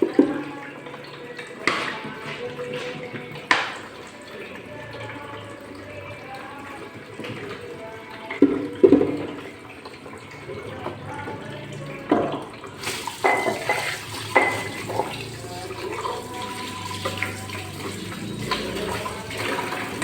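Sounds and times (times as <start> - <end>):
water running from sink tap: 0.0 - 20.0
plates clinking: 13.1 - 16.2.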